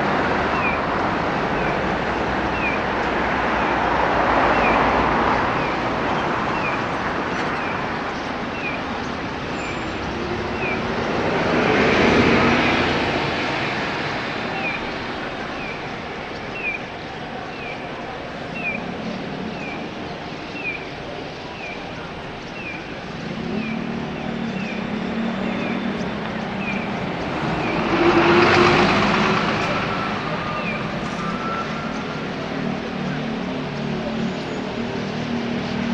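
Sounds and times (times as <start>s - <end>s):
road traffic: 0.0s - 35.9s
vehicle passing close: 23.2s - 31.9s.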